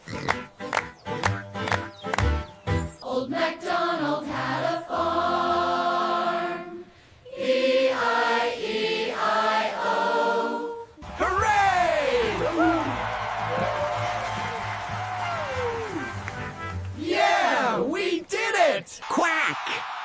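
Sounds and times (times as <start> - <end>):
backing music: 0.0 - 3.0, 11.0 - 17.7
children singing: 3.0 - 10.8.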